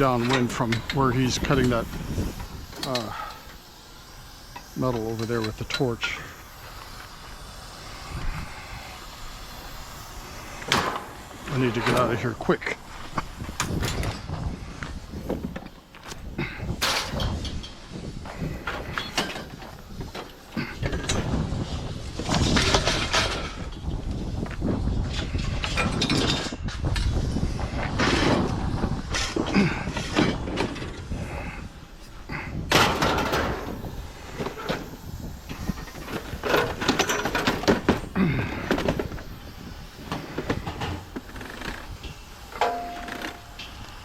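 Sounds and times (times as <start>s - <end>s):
scrap metal clanging: 40.1s - 43.9s.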